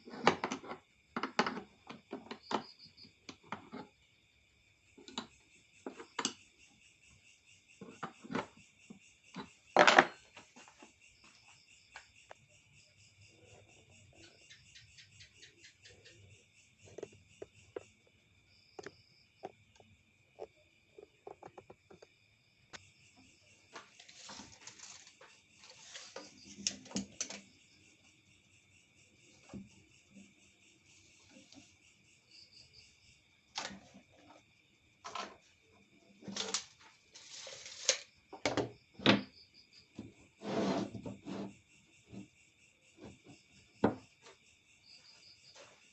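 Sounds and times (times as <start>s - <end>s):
crickets chirping: 0.0s - 45.9s
objects being handled: 23.7s - 27.5s, 36.2s - 38.7s.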